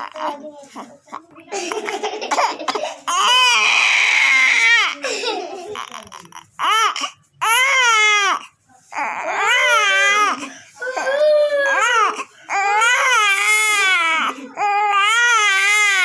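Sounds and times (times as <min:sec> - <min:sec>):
small child crying: 0:07.5 - 0:16.0.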